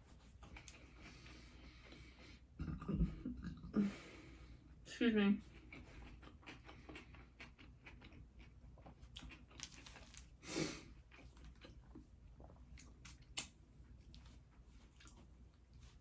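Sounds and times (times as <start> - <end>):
chewing and biting food: 0.0 - 1.6, 5.5 - 16.0
wet mouth clicks: 12.8 - 13.6.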